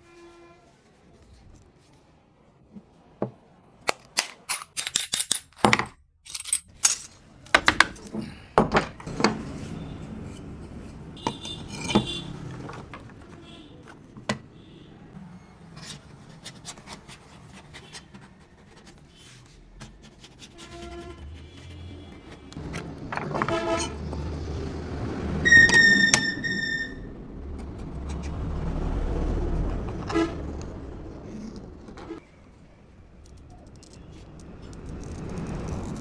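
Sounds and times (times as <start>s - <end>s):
small hard objects clicking: 33.2s - 36.0s.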